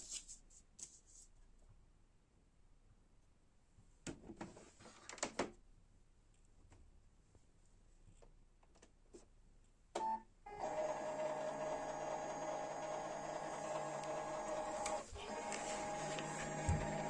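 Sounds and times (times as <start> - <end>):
printer motors whirring: 10.5 - 17.0.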